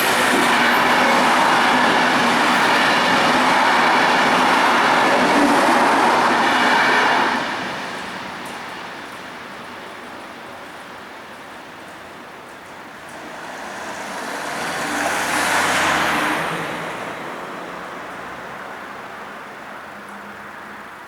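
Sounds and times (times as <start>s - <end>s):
background traffic noise: 0.0s - 21.0s
car driving past: 13.2s - 17.2s.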